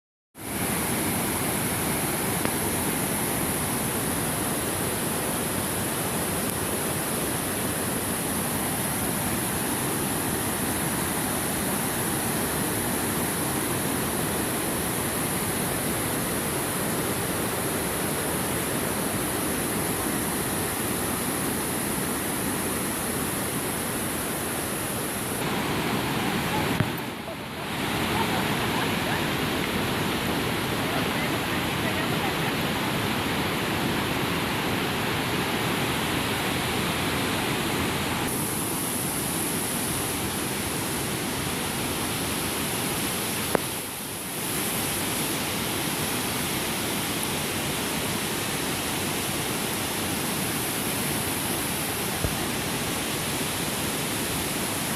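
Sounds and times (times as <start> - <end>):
waterfall rushing: 0.4 - 54.9.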